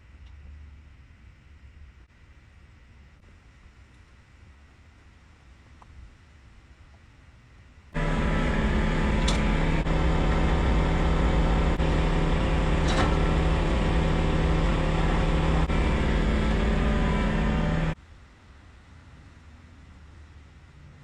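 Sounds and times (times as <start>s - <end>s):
engine droning: 8.0s - 18.0s.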